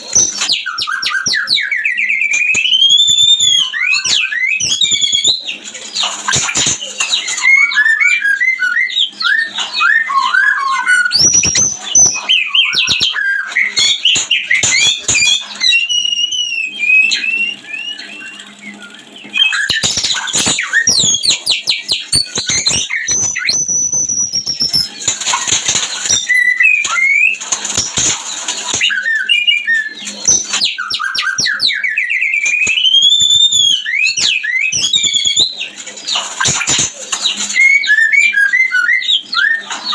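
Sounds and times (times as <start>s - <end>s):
bird singing whistled phrases: 0.0s - 39.9s
bird trills and harsh chatter: 0.0s - 39.9s.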